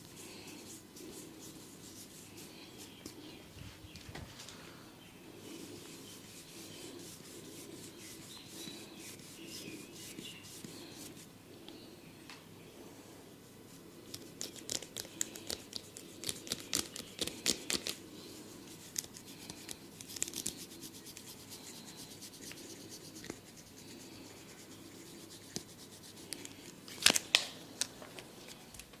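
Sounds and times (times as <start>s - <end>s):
rubbing and scratching hair: 0.0s - 4.5s, 5.4s - 11.3s, 13.6s - 26.8s.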